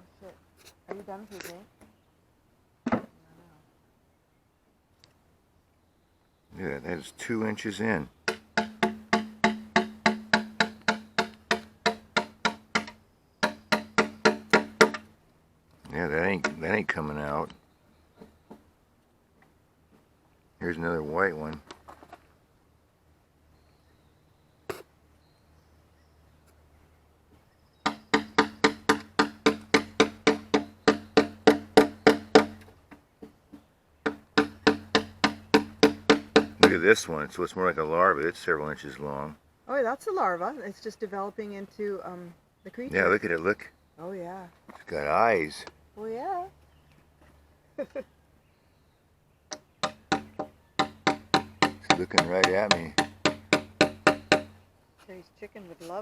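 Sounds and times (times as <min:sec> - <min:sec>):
sharp ringing knocks: 0:08.2 - 0:15.1, 0:27.8 - 0:36.8, 0:49.5 - 0:54.6
hammer blows on wooden pole: 0:08.3 - 0:15.0, 0:27.8 - 0:32.6, 0:34.1 - 0:36.9, 0:49.5 - 0:54.6.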